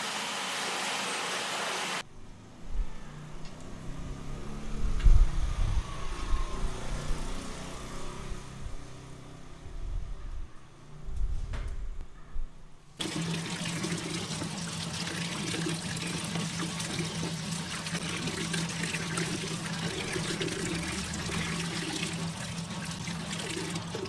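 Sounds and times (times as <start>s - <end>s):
water running: 13.0s - 24.0s.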